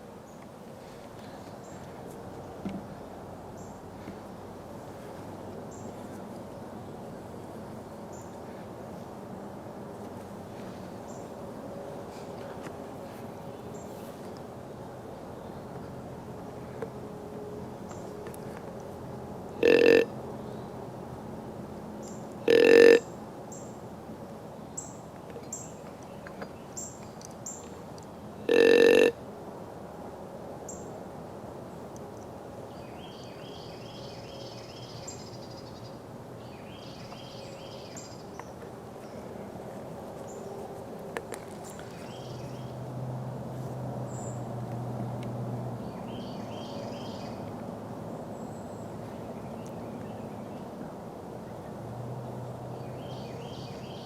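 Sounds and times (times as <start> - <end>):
songbirds chirping and singing: 45.8 - 47.4.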